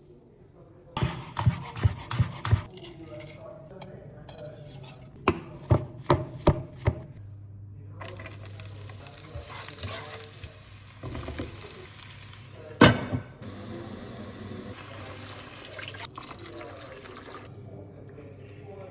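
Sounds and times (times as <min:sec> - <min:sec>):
food sizzling in a pan: 0:08.0 - 0:12.8, 0:13.4 - 0:16.1.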